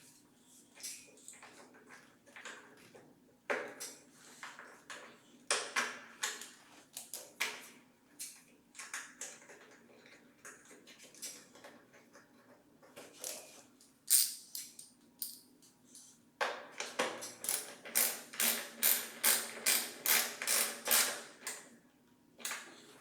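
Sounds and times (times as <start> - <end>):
tools clicking and knocking: 14.1 - 15.5.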